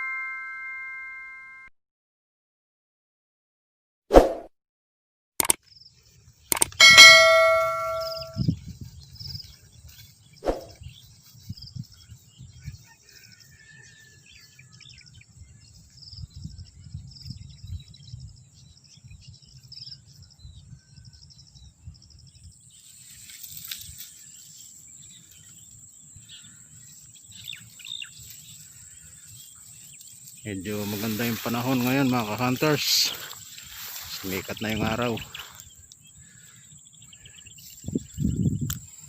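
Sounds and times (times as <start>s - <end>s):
bird chirps: 5.4s - 39.0s
insects: 14.7s - 39.0s.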